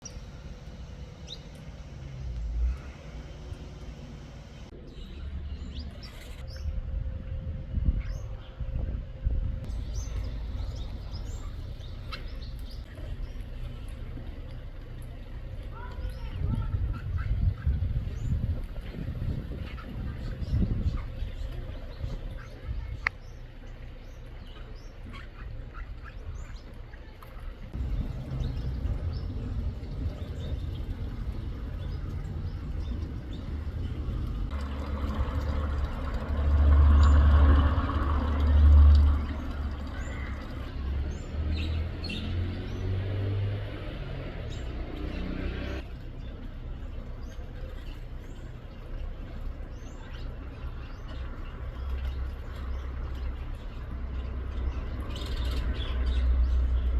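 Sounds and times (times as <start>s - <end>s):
birds chirping: 0.0s - 6.8s, 9.6s - 56.9s
low rumble: 0.0s - 26.8s, 27.4s - 56.9s.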